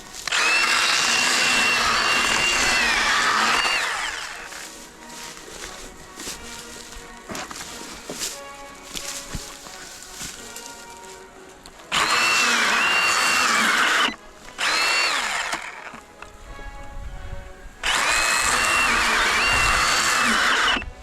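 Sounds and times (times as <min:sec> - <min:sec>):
mini chainsaw motor whine: 0:00.0 - 0:08.3, 0:11.9 - 0:16.1, 0:17.8 - 0:21.0.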